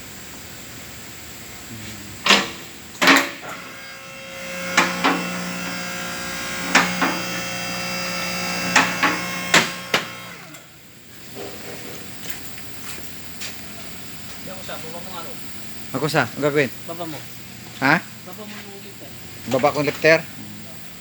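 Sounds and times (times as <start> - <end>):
steady mechanical hum: 0.0 - 21.0
loud metallic knocks and clanks: 4.4 - 10.2.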